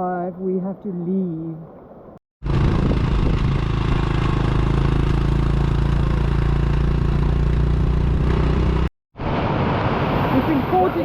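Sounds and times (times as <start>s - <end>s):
motorbike engine running: 2.4s - 8.9s.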